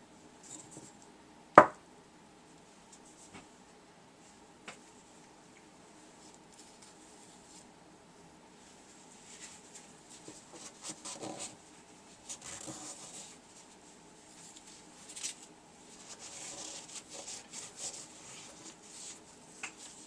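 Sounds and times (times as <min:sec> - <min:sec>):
scratchy rubbing: 0:09.3 - 0:11.6, 0:12.2 - 0:13.7, 0:14.4 - 0:20.0.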